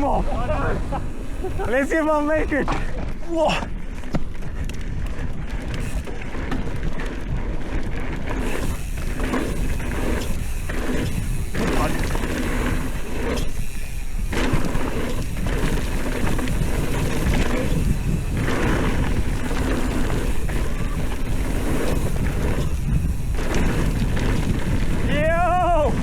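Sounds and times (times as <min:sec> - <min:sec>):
bike rattling: 0:00.0 - 0:26.0
bike tyre noise on dirt: 0:00.0 - 0:26.0
wind rushing: 0:14.2 - 0:26.0.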